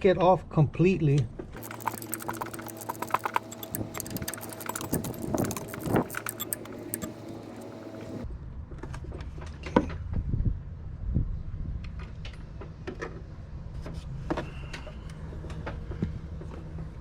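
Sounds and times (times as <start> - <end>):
ratchet wrench clicking: 1.6 - 8.2.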